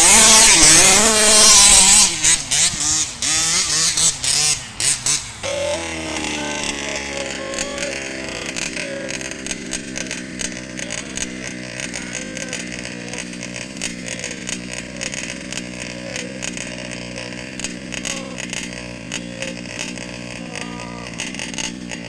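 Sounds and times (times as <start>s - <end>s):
two-stroke engine revving: 0.0s - 22.0s
clicks and clatter: 7.6s - 22.0s.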